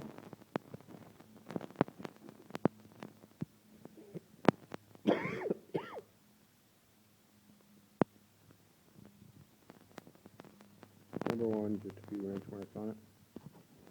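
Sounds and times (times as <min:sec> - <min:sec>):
person coughing: 0:05.1 - 0:06.1.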